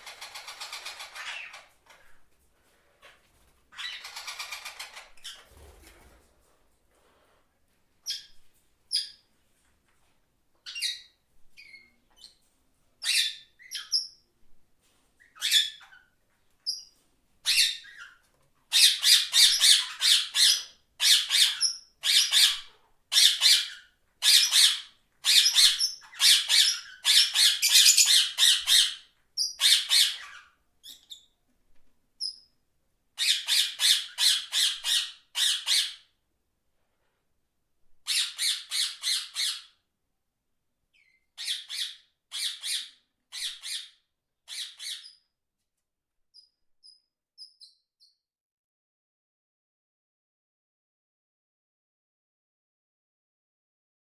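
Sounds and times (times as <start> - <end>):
parrot squawking: 0.0 - 1.7, 3.7 - 5.4, 17.5 - 30.5, 33.2 - 36.0, 38.1 - 39.8, 41.0 - 45.2.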